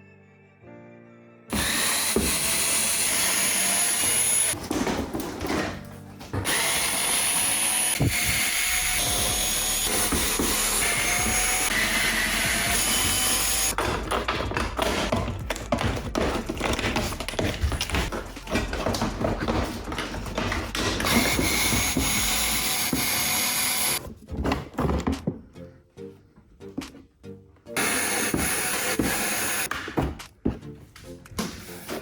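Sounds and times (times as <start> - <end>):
cordless drill running: 1.5 - 4.6, 6.4 - 13.8, 21.0 - 24.0, 27.8 - 29.7.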